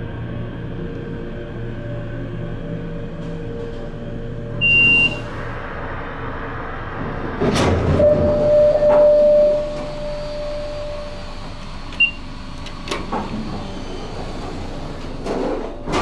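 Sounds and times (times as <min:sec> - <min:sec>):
elevator doors sliding: 0:00.0 - 0:16.0
elevator chime: 0:02.1 - 0:05.7, 0:08.0 - 0:13.2
short high beep: 0:08.0 - 0:11.2
click: 0:11.4 - 0:13.4.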